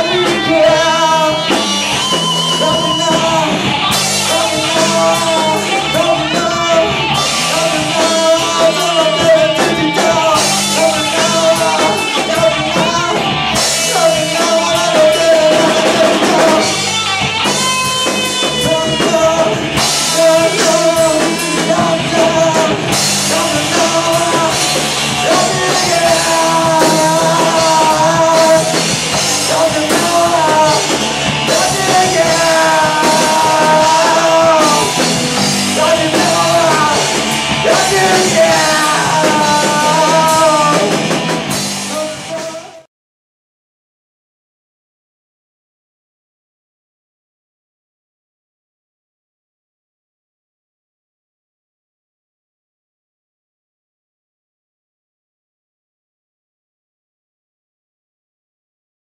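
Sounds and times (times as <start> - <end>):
rock music with singing: 0.0 - 42.9.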